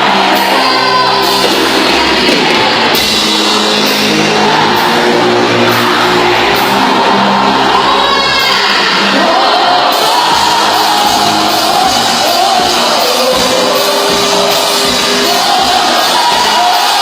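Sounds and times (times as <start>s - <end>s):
rock band playing loudly: 0.0s - 17.0s.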